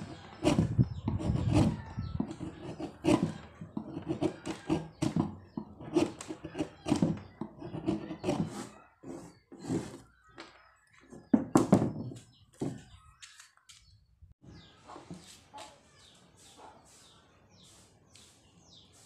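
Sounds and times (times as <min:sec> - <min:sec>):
wood chisel scraping: 0:00.0 - 0:10.2.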